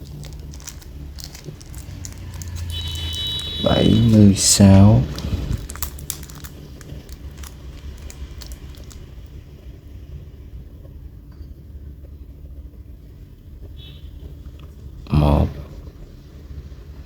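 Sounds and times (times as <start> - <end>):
steady low rumble: 0.0 - 9.4.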